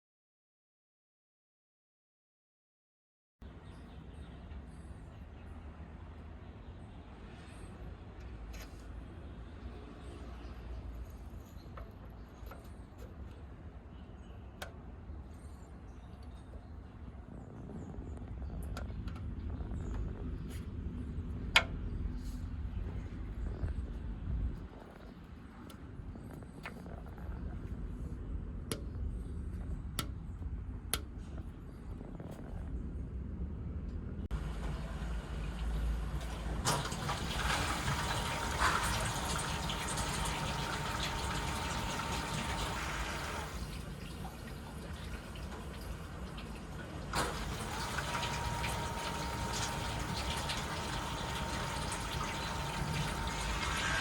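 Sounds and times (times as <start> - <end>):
water pump humming: 34.3 - 54.0.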